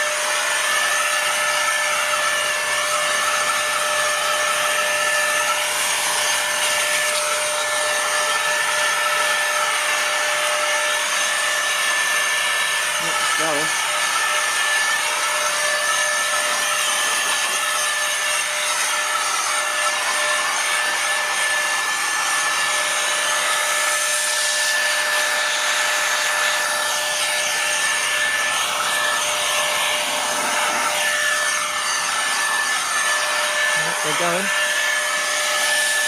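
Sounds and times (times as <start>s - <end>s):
air duster fan whine: 0.0s - 36.0s.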